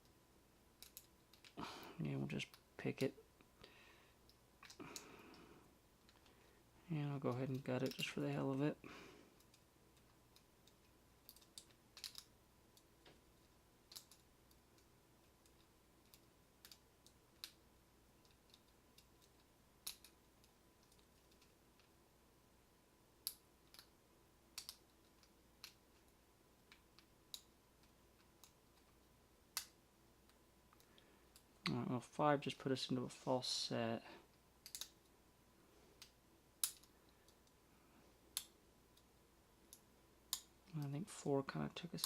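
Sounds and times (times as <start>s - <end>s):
lock pick clicking: 34.6s - 35.0s.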